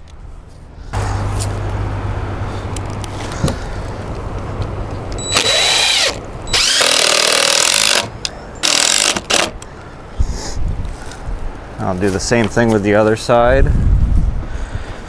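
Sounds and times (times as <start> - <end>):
power drill running: 1.0 - 9.6.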